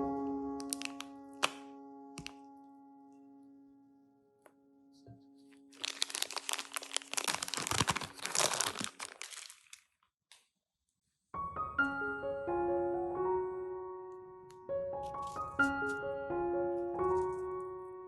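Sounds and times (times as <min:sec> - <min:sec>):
gentle piano music: 0:00.0 - 0:08.5, 0:11.3 - 0:18.0
packaging crunching and crinkling: 0:00.6 - 0:01.6, 0:05.6 - 0:10.1.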